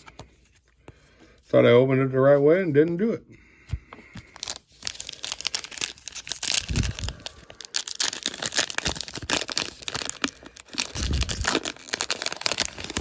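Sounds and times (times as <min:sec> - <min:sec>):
card pack wrapper tearing and crinkling: 0:04.2 - 0:13.0.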